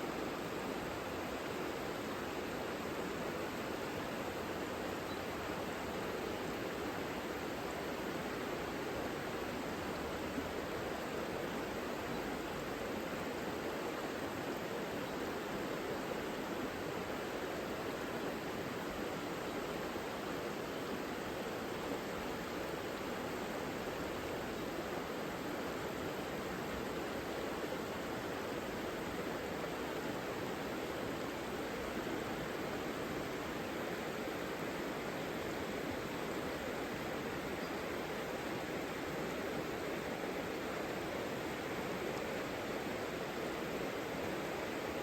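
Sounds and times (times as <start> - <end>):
river flowing: 12.6 - 45.0.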